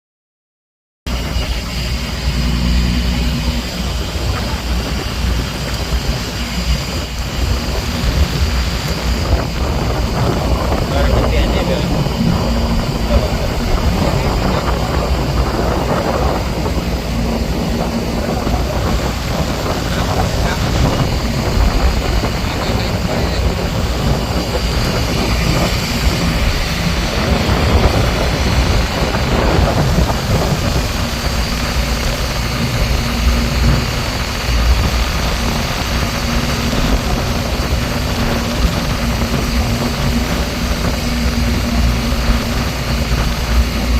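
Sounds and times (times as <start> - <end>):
boat engine running: 1.1 - 43.9.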